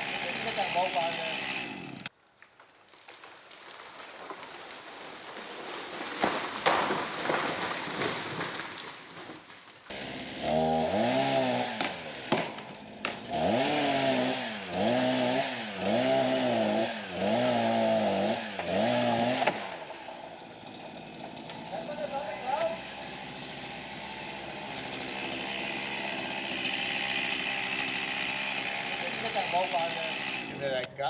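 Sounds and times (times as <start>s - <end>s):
chainsaw revving and cutting: 0.0s - 2.1s, 9.9s - 30.9s
sharp cracks: 2.0s - 9.9s.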